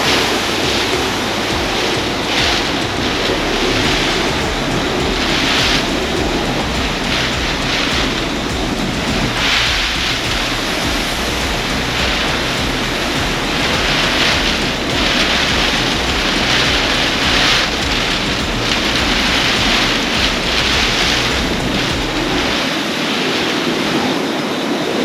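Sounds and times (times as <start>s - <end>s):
heavy rain: 0.0s - 25.0s.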